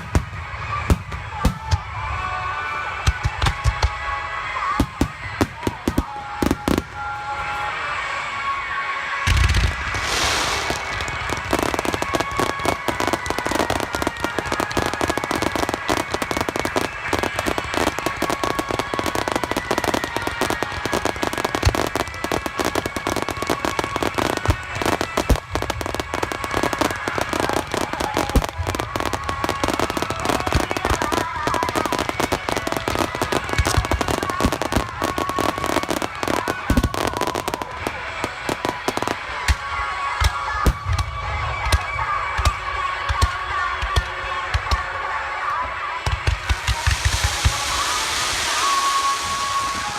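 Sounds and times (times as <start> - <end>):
fireworks crackling: 0.0 - 49.9
fireworks booming: 9.3 - 35.1, 46.1 - 49.9.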